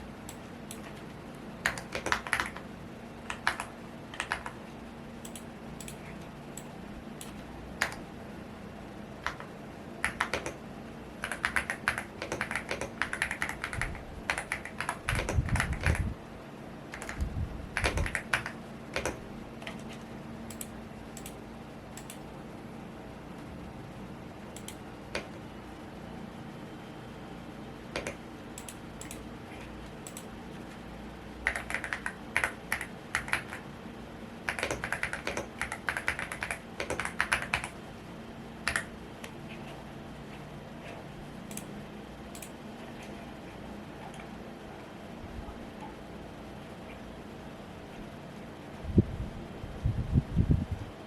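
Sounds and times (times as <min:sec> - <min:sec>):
fan humming: 0:00.0 - 0:51.0
keyboard key clicks: 0:16.9 - 0:19.2, 0:27.9 - 0:29.2.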